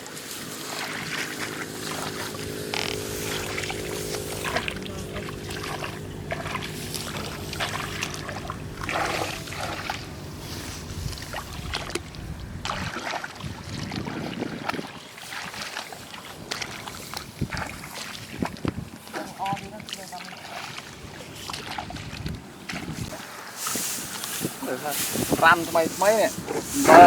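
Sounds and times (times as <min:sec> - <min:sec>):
small motor humming: 0:00.0 - 0:12.7.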